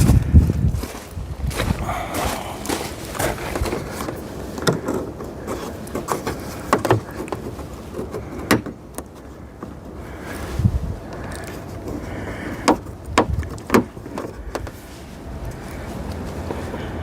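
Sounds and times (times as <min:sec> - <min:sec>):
clicks and knocks of plastic parts: 0:03.2 - 0:10.0, 0:11.1 - 0:14.8.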